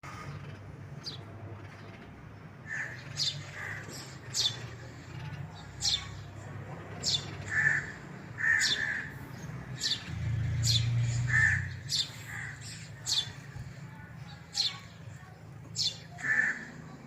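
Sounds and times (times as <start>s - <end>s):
baby sparrow chirping: 2.7s - 6.4s, 7.0s - 16.6s.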